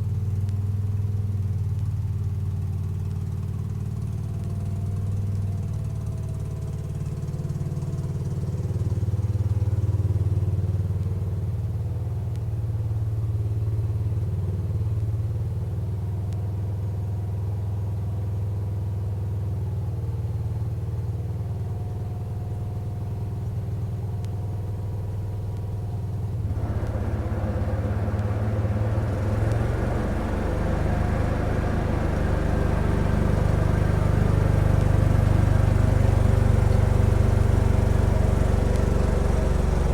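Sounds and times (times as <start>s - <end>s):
tractor engine running: 26.2s - 39.9s
snow thrower clearing snow: 26.5s - 39.9s.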